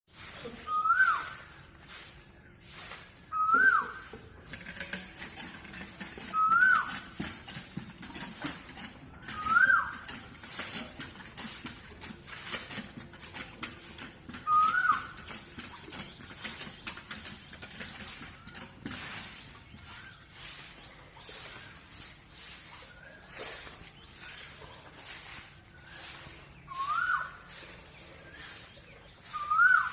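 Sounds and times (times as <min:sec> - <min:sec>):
bird call: 0:00.5 - 0:01.6, 0:03.3 - 0:04.3, 0:06.1 - 0:07.2, 0:09.2 - 0:10.8, 0:14.3 - 0:17.0, 0:22.6 - 0:29.9.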